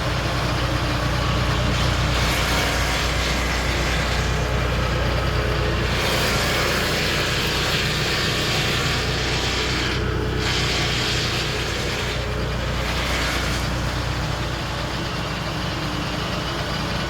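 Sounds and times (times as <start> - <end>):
sawmill engine running under load: 0.0 - 17.0
hiss of saw cutting: 1.5 - 15.0.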